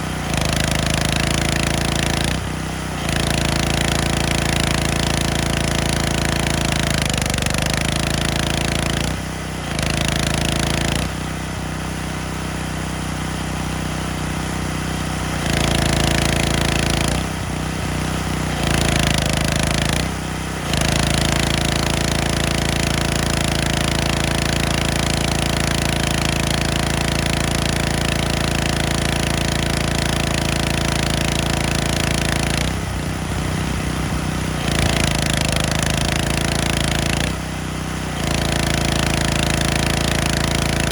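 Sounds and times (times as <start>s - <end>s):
pressure washer engine running: 0.0s - 40.9s.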